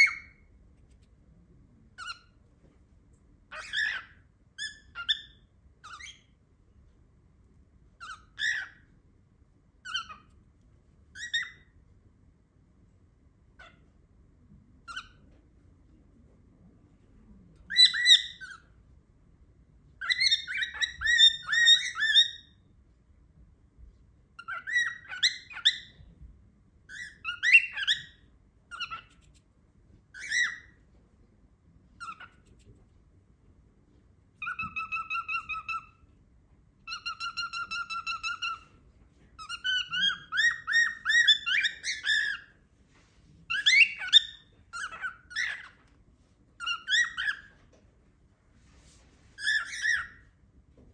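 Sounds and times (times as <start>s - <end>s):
cockatiel chirping and whistling: 0.0s - 0.5s, 2.0s - 2.4s, 3.5s - 6.3s, 8.0s - 8.9s, 9.8s - 10.4s, 11.1s - 11.8s, 13.6s - 13.8s, 14.8s - 15.3s, 17.7s - 18.7s, 20.0s - 22.6s, 24.4s - 26.2s, 26.9s - 29.4s, 30.1s - 30.8s, 32.0s - 32.6s, 34.4s - 36.1s, 36.8s - 38.8s, 39.4s - 42.6s, 43.5s - 45.8s, 46.6s - 47.6s, 49.4s - 50.3s.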